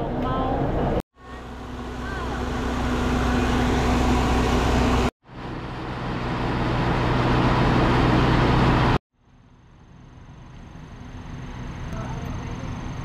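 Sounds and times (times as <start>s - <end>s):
train rumbling: 0.0s - 9.0s.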